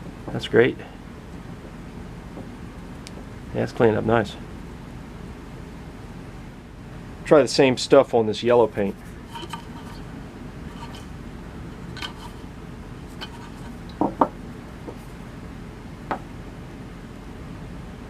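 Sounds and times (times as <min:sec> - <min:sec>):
steady low hum: 0:00.0 - 0:18.0
louder knocks: 0:14.0 - 0:14.4.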